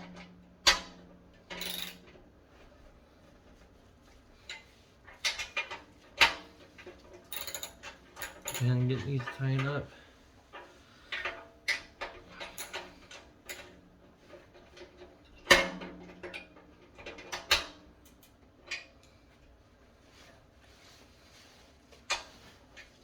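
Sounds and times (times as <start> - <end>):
metal clicks and clanks: 0.0 - 2.3, 4.4 - 9.9, 10.5 - 19.2.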